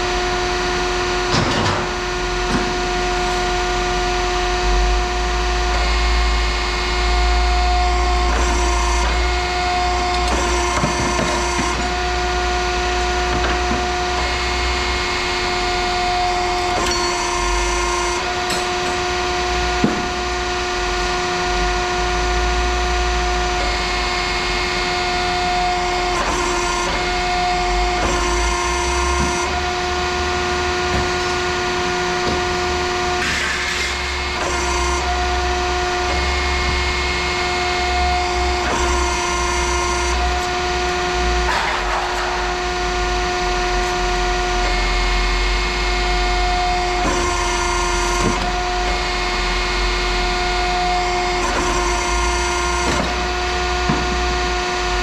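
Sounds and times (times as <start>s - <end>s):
machine humming: 0.0s - 55.0s.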